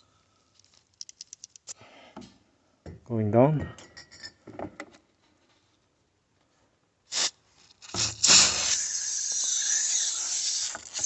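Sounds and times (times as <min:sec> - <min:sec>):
aerosol can spraying hiss: 0:07.1 - 0:11.0.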